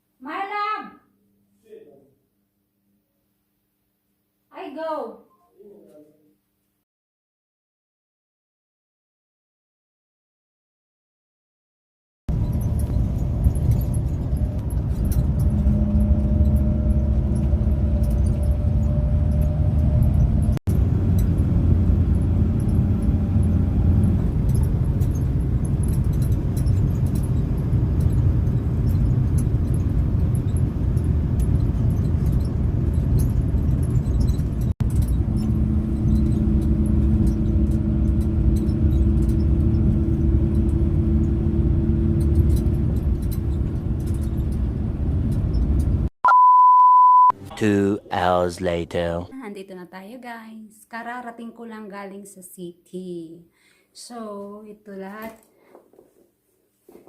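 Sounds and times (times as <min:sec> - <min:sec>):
engine hum: 0:12.3 - 0:46.1
vehicle low rumble: 0:12.3 - 0:46.1.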